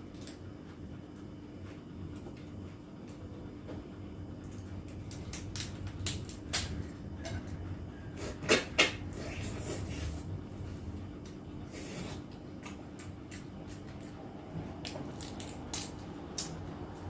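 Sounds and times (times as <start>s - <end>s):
faint steady hum: 0.0s - 17.0s
eating clicks and cracks: 4.4s - 6.8s, 12.6s - 14.2s, 14.8s - 17.0s.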